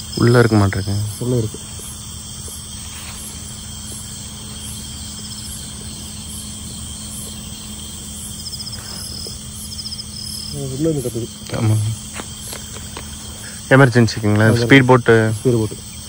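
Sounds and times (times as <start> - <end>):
crickets trilling: 0.0 - 16.0
insect chirps: 0.0 - 16.0
steady low hum: 0.0 - 16.0.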